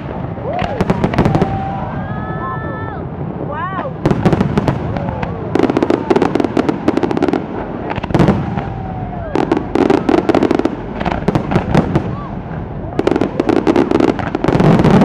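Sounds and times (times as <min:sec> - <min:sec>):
firework booms: 0:00.0 - 0:15.0
firework crackling: 0:00.0 - 0:15.0.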